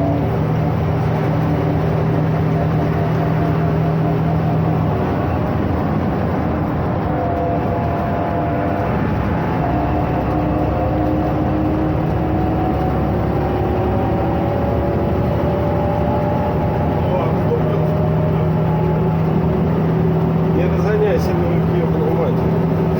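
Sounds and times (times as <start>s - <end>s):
rising whining tones: 0.0s - 20.5s
bus diesel engine drone: 0.0s - 22.9s.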